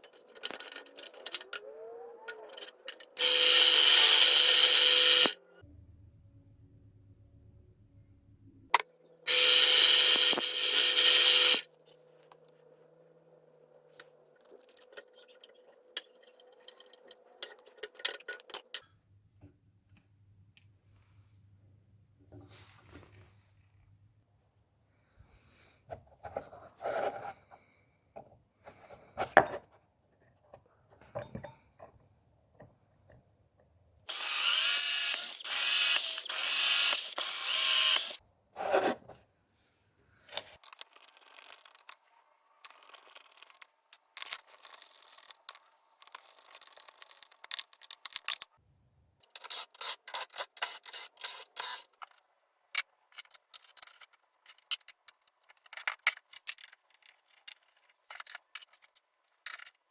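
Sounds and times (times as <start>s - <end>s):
metal parts and tools clicking: 0.0s - 5.4s, 14.4s - 18.9s, 49.2s - 59.9s
power drill running: 3.2s - 5.4s, 9.3s - 11.7s, 34.1s - 38.2s.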